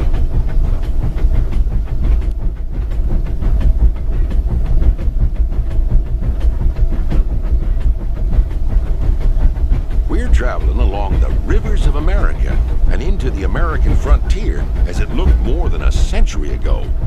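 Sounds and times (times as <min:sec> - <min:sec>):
steam locomotive rumble: 0:00.0 - 0:17.0.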